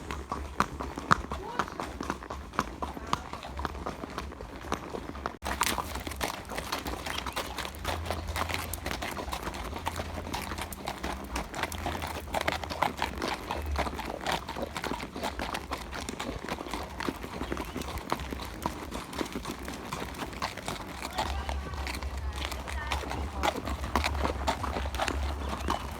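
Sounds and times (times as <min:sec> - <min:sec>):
horse hooves clip-clopping: 0:00.0 - 0:25.9
steady low rumble: 0:21.4 - 0:25.9.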